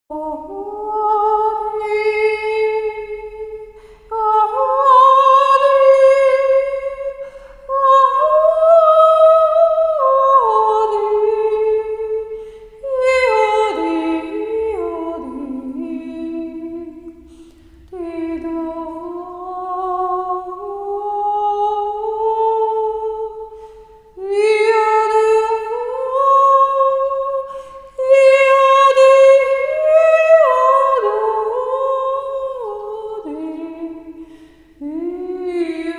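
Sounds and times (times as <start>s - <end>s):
woman singing wordless held notes: 0.1s - 35.9s
breaths: 3.7s - 4.1s, 7.2s - 7.7s, 12.3s - 12.8s, 17.2s - 17.9s, 23.5s - 24.2s, 27.5s - 28.0s, 34.2s - 34.8s.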